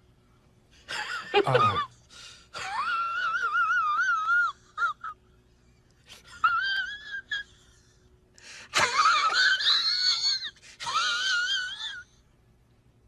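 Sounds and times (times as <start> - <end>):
man laughing high-pitched: 1.0 - 1.9.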